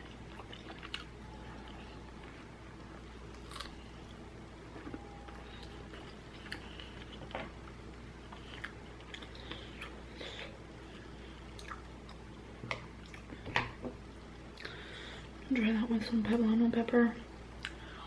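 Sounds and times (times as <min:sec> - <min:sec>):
person chewing noodles: 0:00.0 - 0:12.4, 0:13.0 - 0:13.4.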